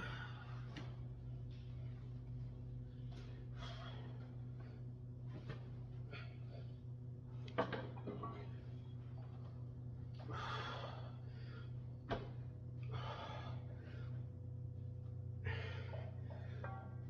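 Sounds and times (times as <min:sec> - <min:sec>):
man breathing heavily: 0:00.0 - 0:05.2, 0:10.1 - 0:14.5, 0:15.2 - 0:17.0
steady low hum: 0:00.0 - 0:17.0.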